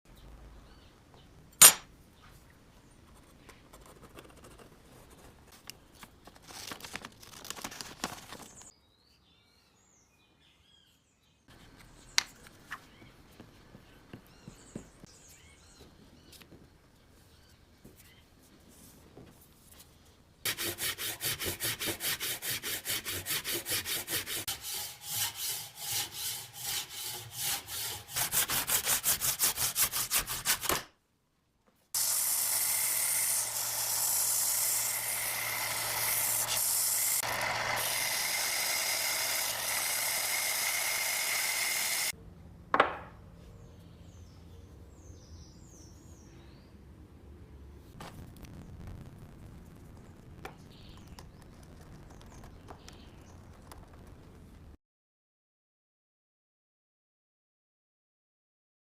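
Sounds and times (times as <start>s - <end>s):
sharp knock: 1.6s - 1.9s
hand saw cutting wood: 20.5s - 30.8s, 32.0s - 42.1s
power tool motor hum: 32.0s - 42.1s.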